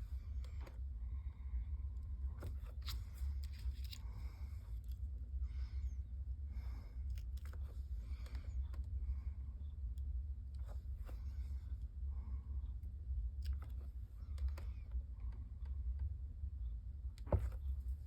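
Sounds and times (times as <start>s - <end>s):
steady low hum: 0.0s - 18.0s
paper and card rustling: 2.4s - 4.2s.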